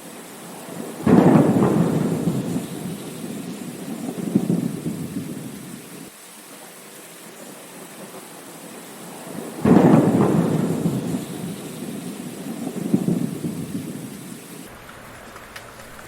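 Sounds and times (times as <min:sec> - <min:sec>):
steady rain: 0:00.0 - 0:16.0
thunder clap and rumble: 0:00.6 - 0:06.1, 0:09.3 - 0:16.0.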